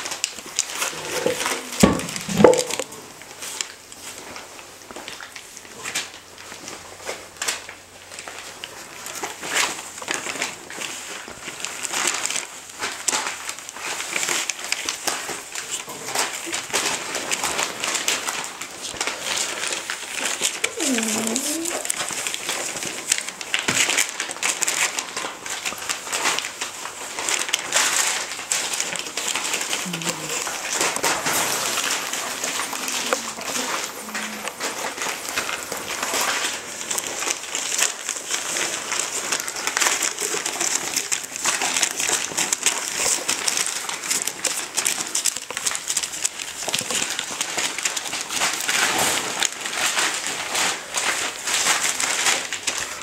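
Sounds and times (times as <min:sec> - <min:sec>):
rustling and crinkling: 0:00.0 - 0:53.0
puppy whimpering: 0:20.6 - 0:22.0, 0:32.1 - 0:34.7.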